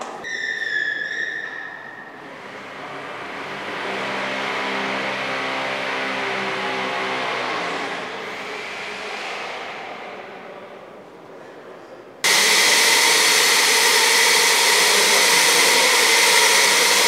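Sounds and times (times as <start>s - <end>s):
large vehicle passing by: 2.2s - 10.1s.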